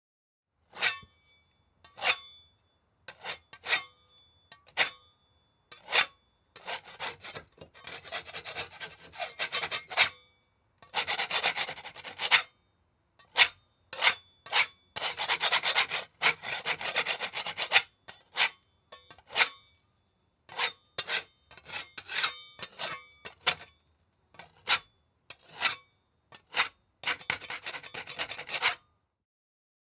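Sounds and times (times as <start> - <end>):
putty knife scraping surface: 0.7 - 1.2, 1.8 - 2.3, 3.1 - 3.9, 5.7 - 10.2, 10.8 - 12.5, 13.2 - 19.8, 20.5 - 23.8, 24.4 - 28.8
faint metallic ring: 0.8 - 6.6, 18.5 - 23.9.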